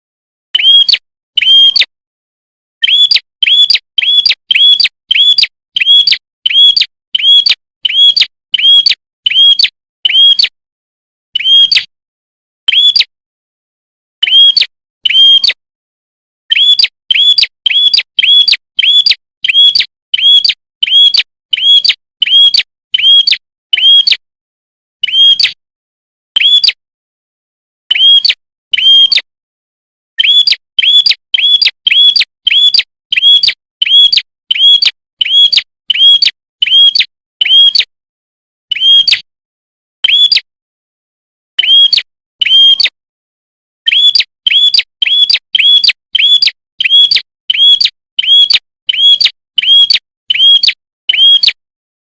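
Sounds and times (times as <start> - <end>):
bird chirping rapidly: 0.5 - 1.9, 2.8 - 10.4, 11.4 - 11.8, 12.7 - 13.1, 16.5 - 24.2, 26.4 - 26.8, 30.2 - 37.8, 38.7 - 39.2, 40.0 - 40.5, 43.9 - 51.3.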